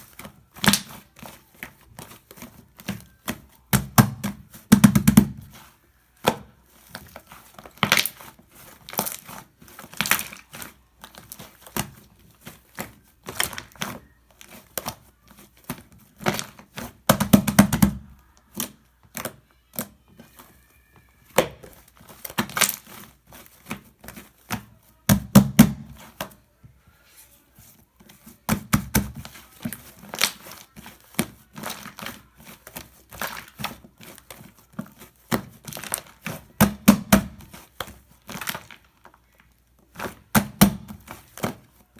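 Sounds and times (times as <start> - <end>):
hands squishing shaving foam: 0.0 - 26.4, 27.2 - 41.9.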